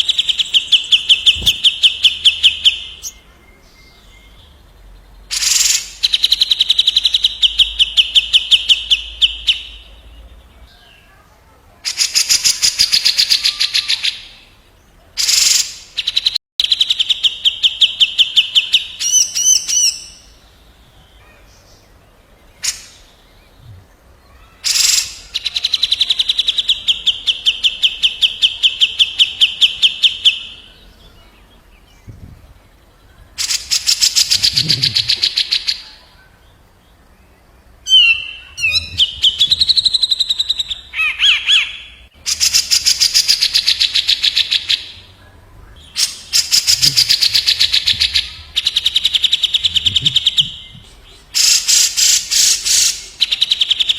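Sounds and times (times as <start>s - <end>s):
birds calling with rattling trills: 17.5s - 53.9s.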